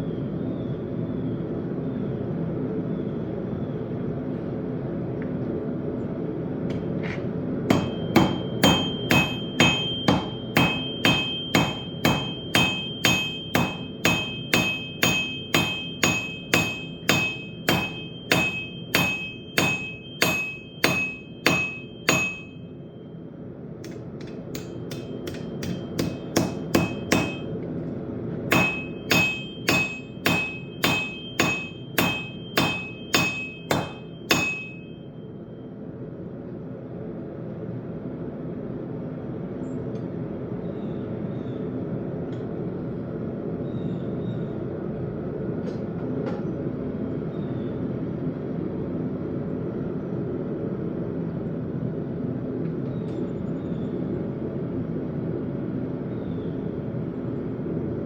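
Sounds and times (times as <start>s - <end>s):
hammer ringing on anvil: 7.7s - 22.8s, 23.9s - 27.5s, 28.5s - 35.2s.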